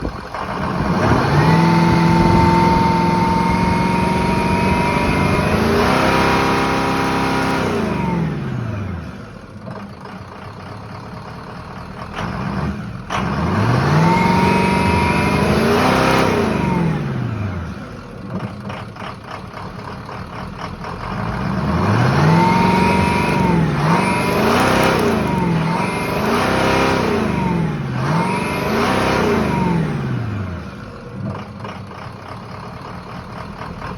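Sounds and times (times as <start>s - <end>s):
car engine revving: 0.0s - 9.4s, 12.1s - 18.9s, 21.0s - 31.8s.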